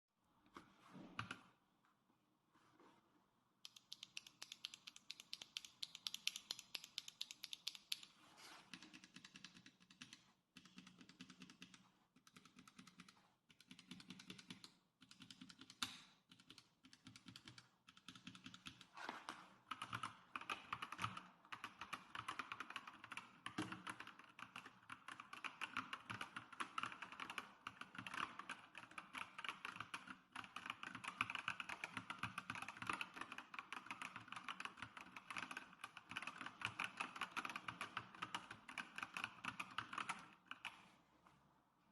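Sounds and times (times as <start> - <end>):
mechanical keyboard typing: 3.7 - 8.1, 8.7 - 18.9, 19.7 - 40.8.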